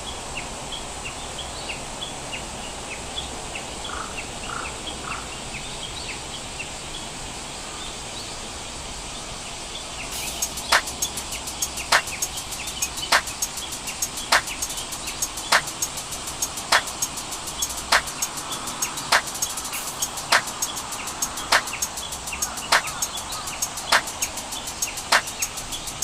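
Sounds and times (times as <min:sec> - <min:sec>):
lower calls: 0:10.0 - 0:26.0
high repeated chirps: 0:10.1 - 0:26.0
sharp clicks: 0:10.2 - 0:26.0.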